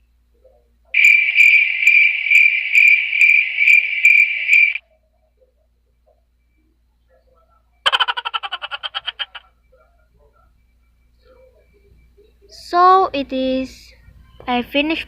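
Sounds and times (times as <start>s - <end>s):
cricket chirping: 1.0s - 4.8s, 7.8s - 12.3s.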